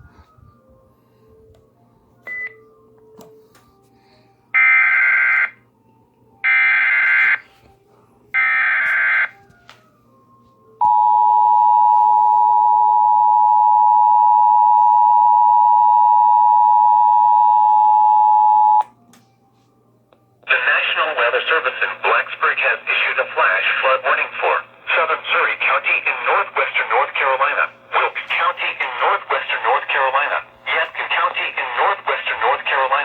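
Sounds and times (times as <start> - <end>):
two-tone attention signal: 10.8 - 18.8.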